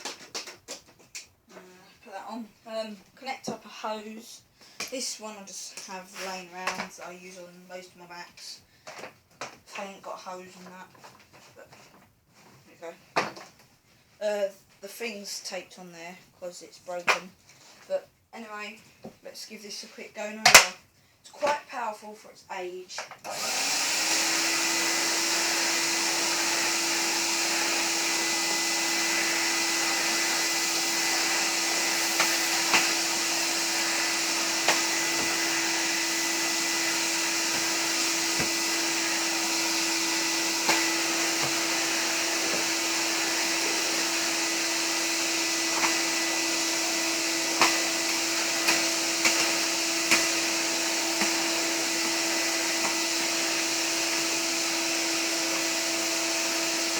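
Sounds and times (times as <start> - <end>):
vacuum cleaner running: 23.2 - 56.9.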